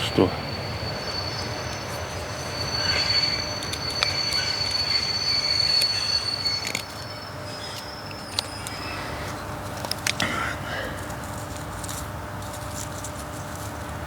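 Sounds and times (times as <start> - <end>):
high-pitched squeal: 0.0 - 9.7.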